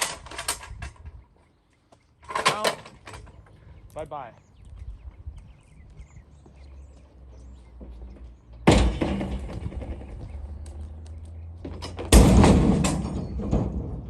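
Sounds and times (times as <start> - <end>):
clattering rattle: 11.6 - 14.0.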